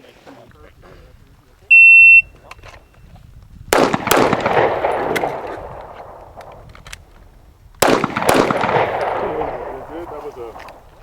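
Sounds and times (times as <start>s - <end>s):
pistol shots echoing: 3.7s - 11.0s.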